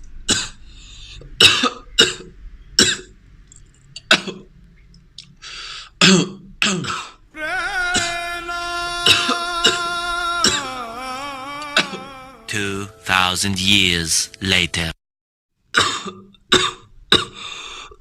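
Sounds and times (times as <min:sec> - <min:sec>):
person coughing: 0:09.1 - 0:09.8.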